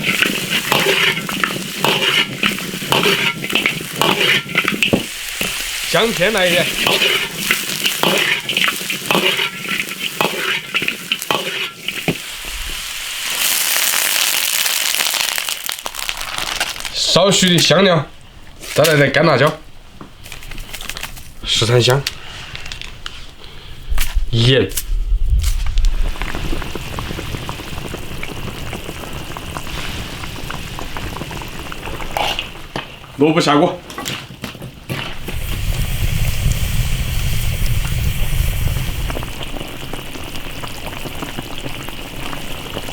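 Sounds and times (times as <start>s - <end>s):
spatula stirring and scraping: 0.0s - 13.5s
meat sizzling in a wok: 0.0s - 16.9s, 25.4s - 33.1s, 35.0s - 42.9s.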